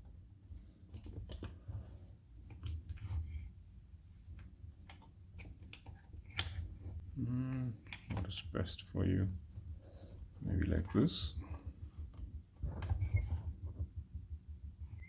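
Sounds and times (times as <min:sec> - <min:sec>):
padlock clicks and taps: 0:06.3 - 0:06.7
steady low hum: 0:06.4 - 0:12.6.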